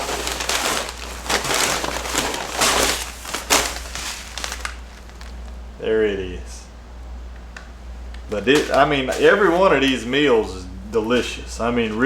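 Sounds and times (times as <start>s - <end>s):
food pouches crinkling and rustling: 0.0s - 5.7s, 8.1s - 12.0s.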